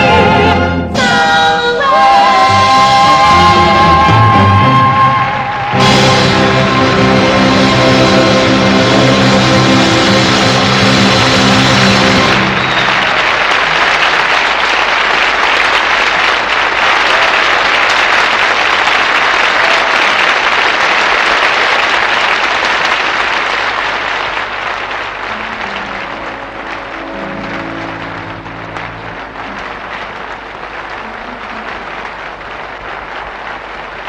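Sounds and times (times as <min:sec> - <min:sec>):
band playing: 0:00.0 - 0:14.4, 0:25.2 - 0:32.8
audience applauding: 0:02.5 - 0:34.0.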